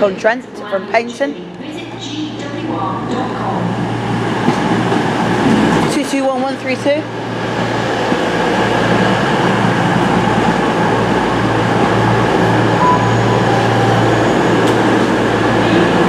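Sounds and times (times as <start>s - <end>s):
train diesel engines humming: 0.0s - 16.0s
faint squeal: 12.8s - 14.9s.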